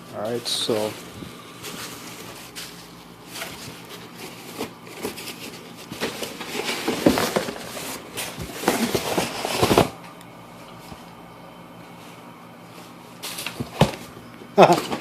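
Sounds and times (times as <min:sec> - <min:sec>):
bubble wrap crinkling: 0:01.6 - 0:10.0.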